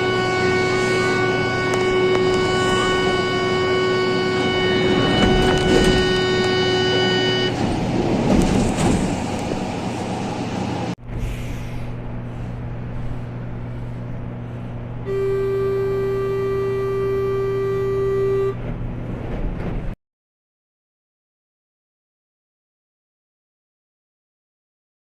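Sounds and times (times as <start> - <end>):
train door warning buzzer: 0.0 - 7.8, 15.0 - 18.7
train and platform noise: 0.0 - 20.0.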